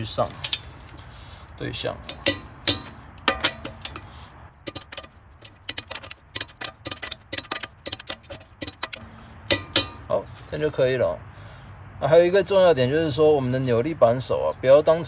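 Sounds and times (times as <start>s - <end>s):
ratchet clicks: 2.1s - 10.1s.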